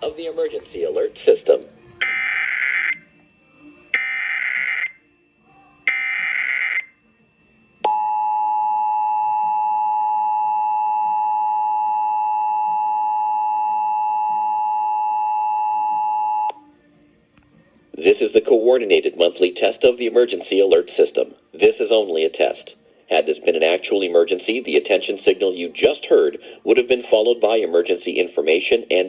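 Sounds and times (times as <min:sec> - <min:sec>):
two-tone attention signal: 0:02.0 - 0:03.0, 0:03.9 - 0:05.0, 0:05.8 - 0:06.9.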